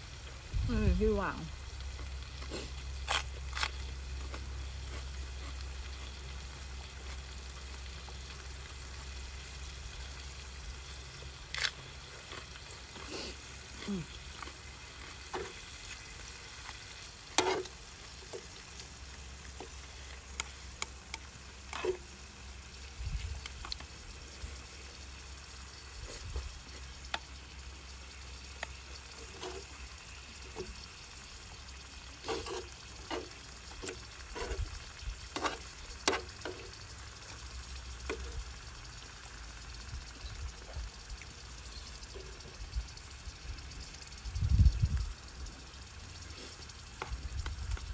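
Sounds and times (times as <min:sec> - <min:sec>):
food sizzling on a grill: 0:00.0 - 0:47.9
wind rumble on microphone: 0:00.4 - 0:01.6, 0:23.0 - 0:23.5, 0:44.3 - 0:45.2, 0:47.2 - 0:47.9.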